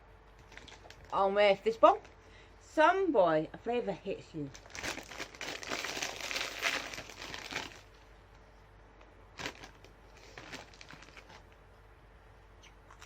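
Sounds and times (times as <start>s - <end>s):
plastic wrapper crinkling: 0.4s - 1.2s, 4.5s - 8.0s, 9.3s - 11.6s.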